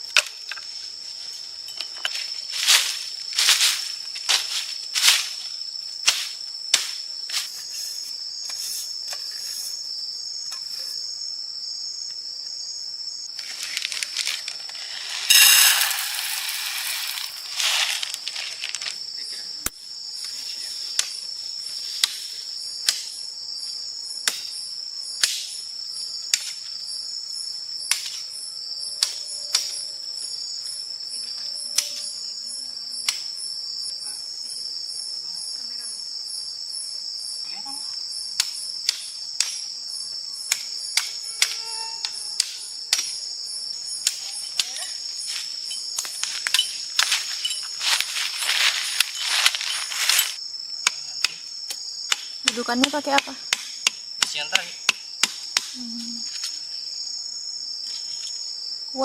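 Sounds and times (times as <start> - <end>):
insects buzzing: 0.0 - 59.0
rustling noise: 13.4 - 19.0, 46.2 - 50.4.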